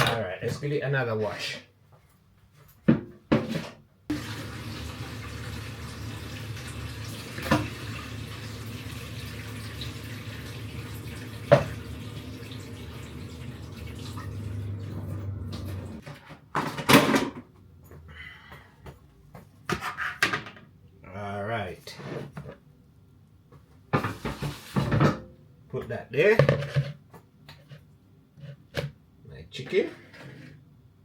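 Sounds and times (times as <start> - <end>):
tap running into sink: 4.1 - 5.7, 6.6 - 8.2, 8.8 - 15.9.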